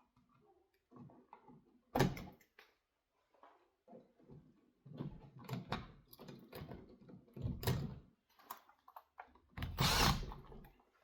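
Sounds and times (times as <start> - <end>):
screwdriver working wire onto screw: 9.6 - 10.4.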